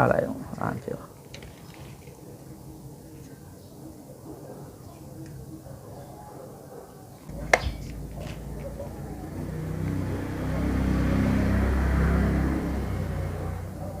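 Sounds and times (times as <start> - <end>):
vehicle engine running: 7.3 - 14.0.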